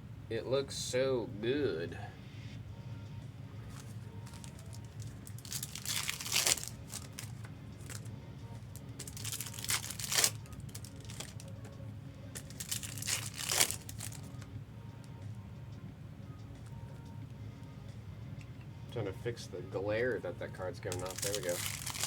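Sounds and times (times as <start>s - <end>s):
wrappers crinkling and rustling: 3.7s - 14.5s, 20.8s - 22.0s.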